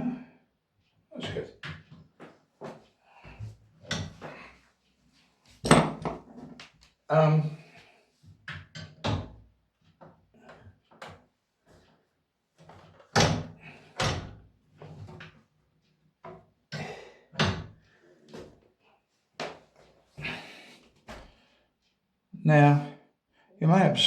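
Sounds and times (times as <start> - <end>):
knocks and clunks of parts: 16.3 - 18.5.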